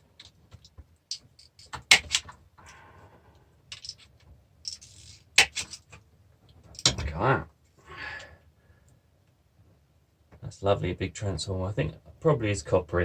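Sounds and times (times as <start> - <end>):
metal parts scraping and rattling: 3.7 - 6.0.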